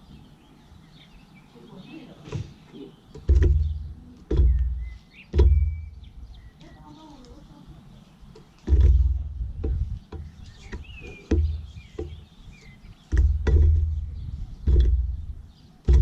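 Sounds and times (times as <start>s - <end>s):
faint bird chirps: 0.0s - 9.1s, 9.7s - 15.9s
sharp knocks with low thump: 2.2s - 6.3s, 8.6s - 16.0s.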